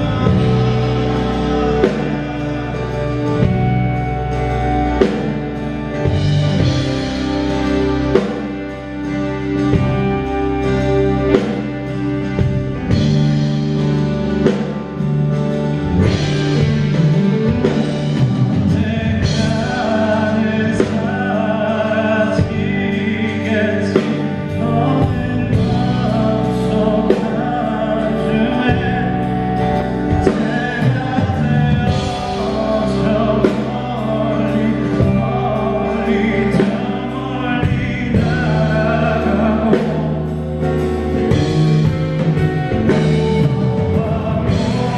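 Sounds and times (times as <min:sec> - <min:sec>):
man singing with band: 0:00.0 - 0:44.9.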